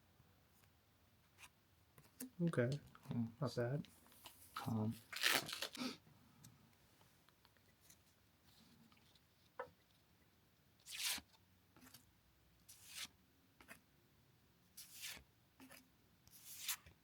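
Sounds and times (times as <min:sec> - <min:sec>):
cards sliding swishes: 0:10.9 - 0:12.0, 0:12.7 - 0:13.8, 0:14.8 - 0:16.9.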